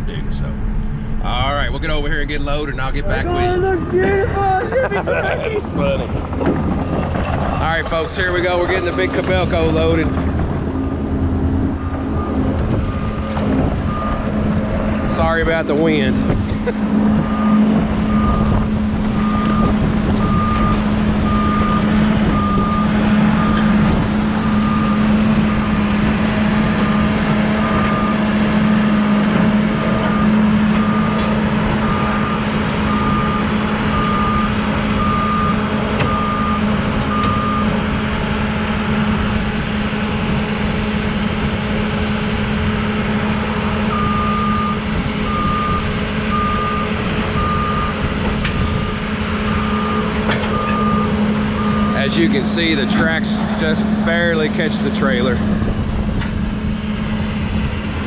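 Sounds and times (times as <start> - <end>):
excavator diesel engine running: 0.0 - 58.0
warning alarm beeping: 2.3 - 4.7, 7.7 - 10.1, 17.2 - 25.7, 29.9 - 37.8, 43.9 - 52.7.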